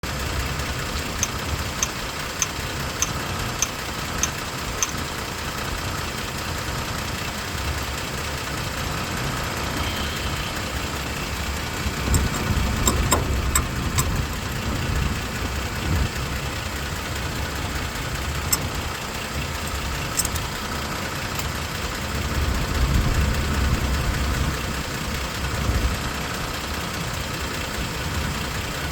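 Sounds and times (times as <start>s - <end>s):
car engine idling: 0.0s - 28.9s
regular clicking: 1.0s - 5.0s, 11.9s - 14.5s, 18.4s - 18.9s, 19.6s - 20.6s.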